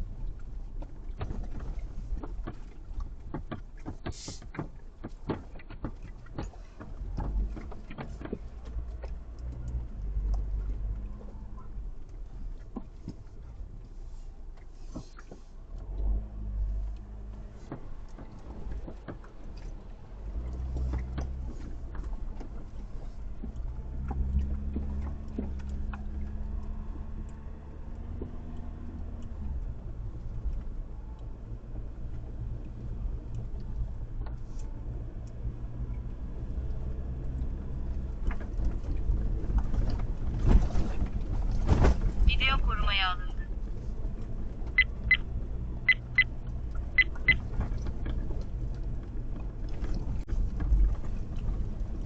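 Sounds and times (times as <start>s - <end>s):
car engine running: 0.0s - 52.0s
knocks and rattles: 0.3s - 10.4s.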